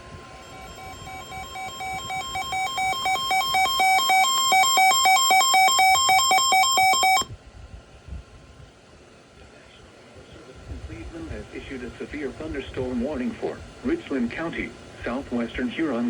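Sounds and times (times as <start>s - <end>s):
weather alert radio alarm beeps: 0.0s - 7.3s.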